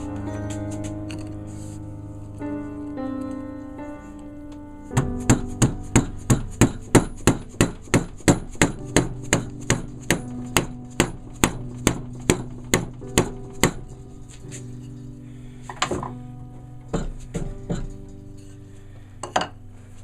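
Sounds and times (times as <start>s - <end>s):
quiet sustained music: 0.0s - 20.0s
hammer clanging on steel axe head: 19.2s - 19.6s.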